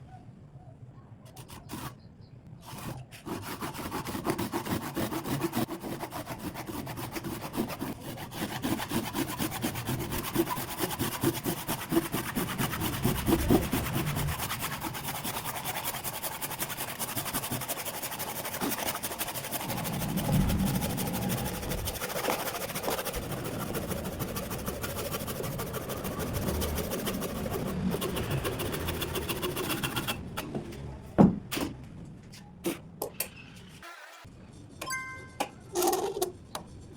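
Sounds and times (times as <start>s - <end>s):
handsaw cutting wood: 2.6s - 30.4s.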